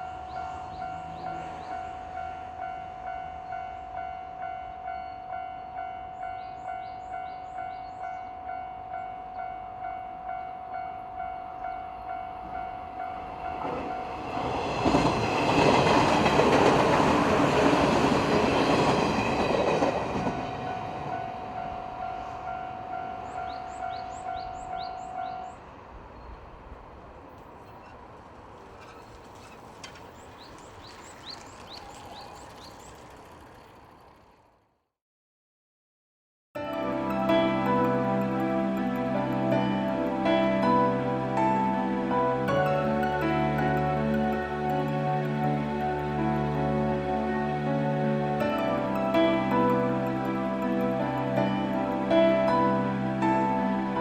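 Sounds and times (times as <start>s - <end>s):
birds chirping: 0.0s - 2.5s, 4.7s - 9.6s, 14.3s - 26.7s, 27.3s - 34.4s
level-crossing alarm dinging: 0.0s - 25.6s
train passing rumble: 0.0s - 34.7s, 36.6s - 54.0s.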